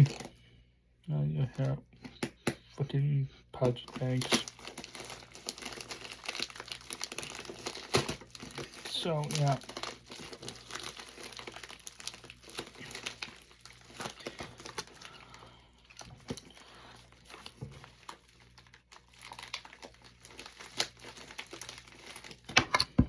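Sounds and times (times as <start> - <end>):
packaging crinkling and rustling: 0.0 - 0.4, 3.6 - 23.0.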